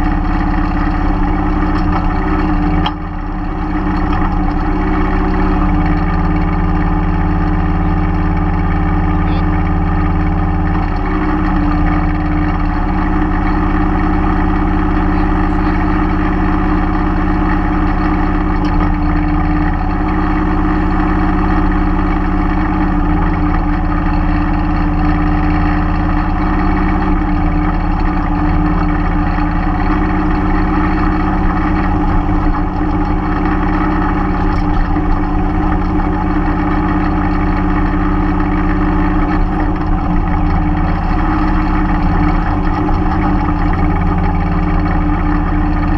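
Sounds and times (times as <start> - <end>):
tractor diesel engine running: 0.0 - 45.9.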